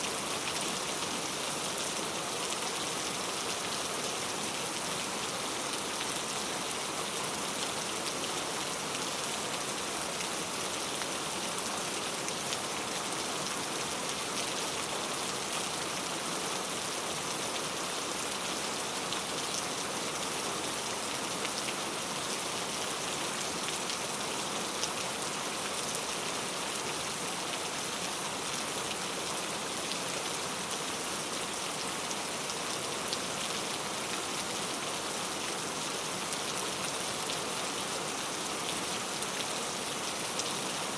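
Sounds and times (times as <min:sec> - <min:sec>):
heavy rain: 0:00.0 - 0:40.9.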